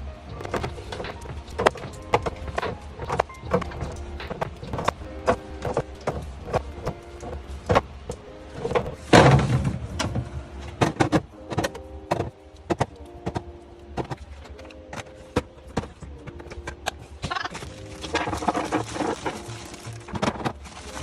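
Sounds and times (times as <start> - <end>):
faint background music: 0.0 - 21.0
packages clicking and knocking: 0.3 - 21.0
scraping rustle: 17.2 - 21.0.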